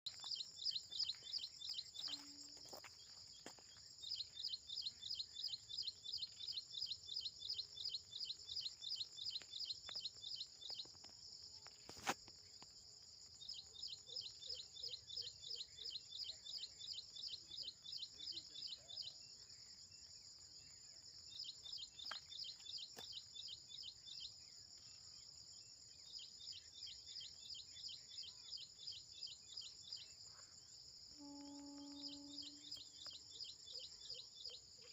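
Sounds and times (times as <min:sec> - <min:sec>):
bird chirping: 0:00.1 - 0:11.0
insect trill: 0:00.1 - 0:34.9.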